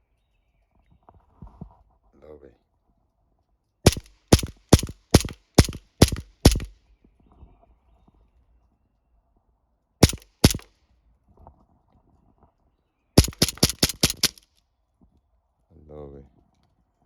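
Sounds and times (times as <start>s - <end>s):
air pistol shots: 3.9s - 6.7s, 10.0s - 10.7s, 13.2s - 14.4s.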